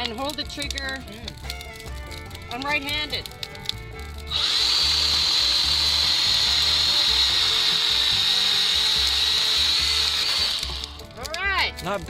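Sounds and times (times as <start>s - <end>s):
mini chainsaw cutting wood: 4.3s - 11.1s.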